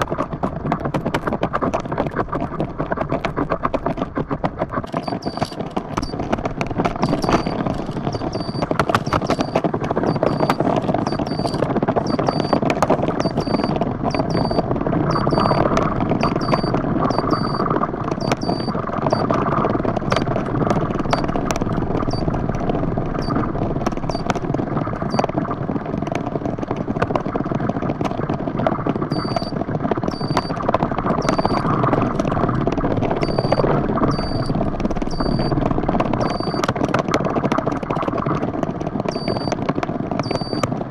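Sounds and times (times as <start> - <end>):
kiteboard rushing over water: 0.0 - 40.9
short high electronic beep: 7.0 - 12.6, 13.2 - 19.3, 29.1 - 29.5, 30.1 - 30.6, 31.2 - 31.6, 33.2 - 35.5, 36.2 - 36.6.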